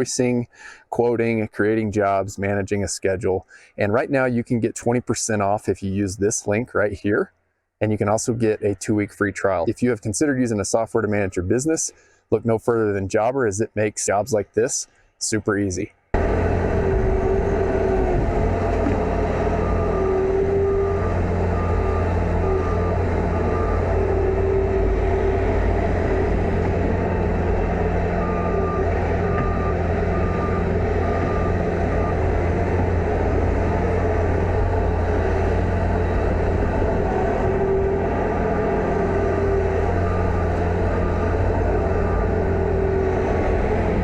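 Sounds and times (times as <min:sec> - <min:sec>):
diesel engine running under load: 0:16.1 - 0:44.0
backup alarm beeping: 0:16.3 - 0:25.6, 0:26.2 - 0:32.9, 0:39.0 - 0:42.4.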